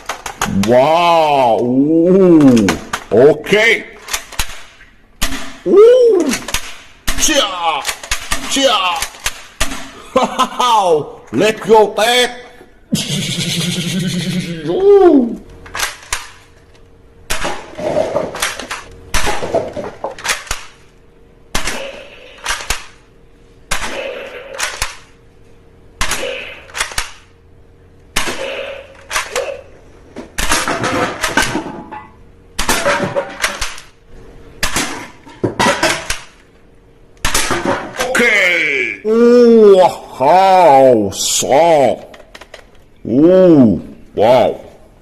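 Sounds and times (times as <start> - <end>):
toy guns firing in bursts: 4.0 - 5.6, 21.5 - 23.0, 23.7 - 25.2, 26.0 - 27.3.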